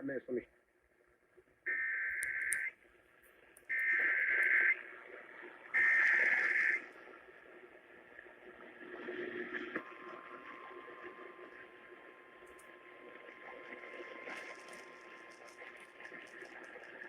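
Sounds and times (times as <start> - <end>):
radio static: 1.7 - 2.7, 3.7 - 6.9
buzzing digital data tones: 3.7 - 4.8, 5.8 - 6.8.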